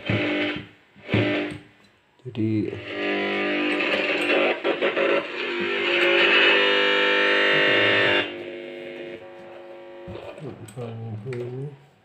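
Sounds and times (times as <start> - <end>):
electric guitar through amplifier: 2.7 - 11.8.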